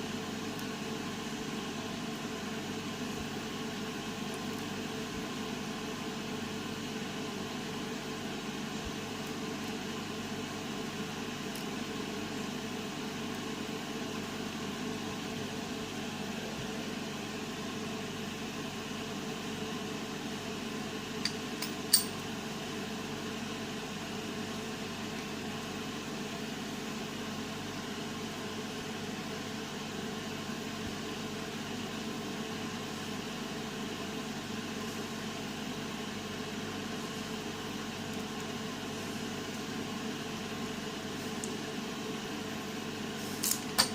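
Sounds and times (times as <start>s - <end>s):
background hum and hiss: 0.0s - 43.9s.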